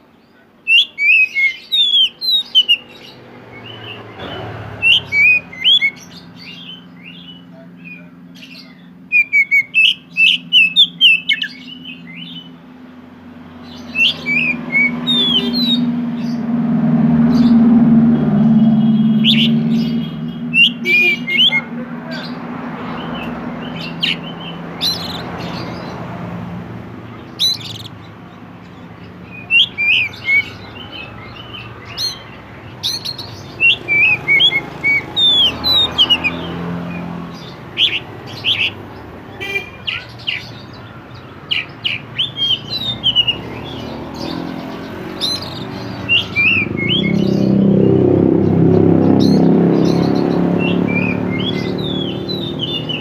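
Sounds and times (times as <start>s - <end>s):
bird singing whistled notes: 0.7s - 12.5s, 13.6s - 22.3s, 22.9s - 25.9s, 27.3s - 28.0s, 29.3s - 38.8s, 39.4s - 47.9s, 49.2s - 53.0s
low hum: 14.5s - 20.9s.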